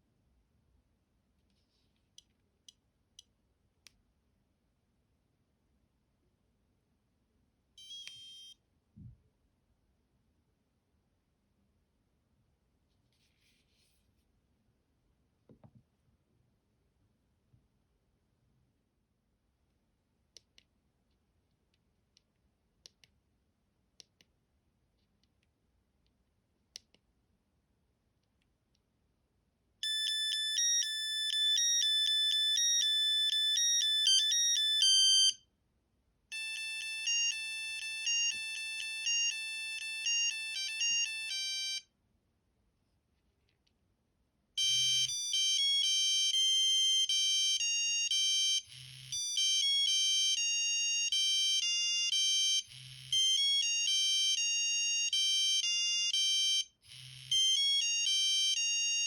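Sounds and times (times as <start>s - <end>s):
phone ringtone melodies: 29.8s - 35.4s, 36.3s - 41.8s, 44.6s - 59.0s.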